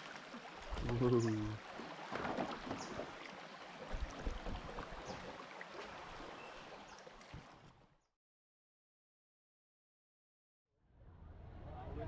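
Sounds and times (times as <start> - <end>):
water splashing: 0.0 - 7.8.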